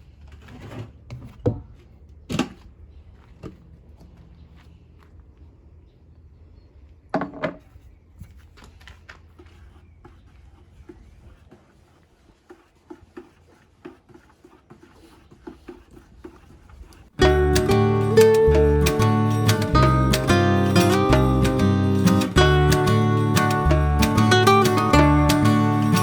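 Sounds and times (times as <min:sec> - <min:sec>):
acoustic guitar music: 0:17.2 - 0:26.0.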